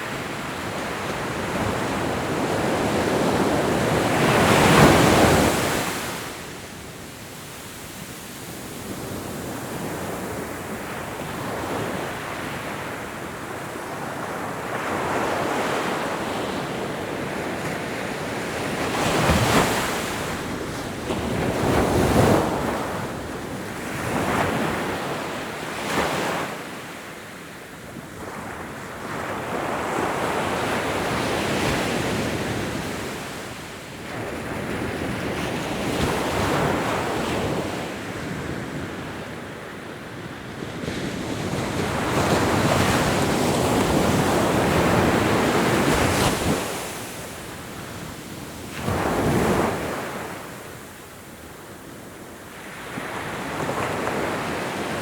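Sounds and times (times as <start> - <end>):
ocean waves breaking on shore: 28.2 - 55.0.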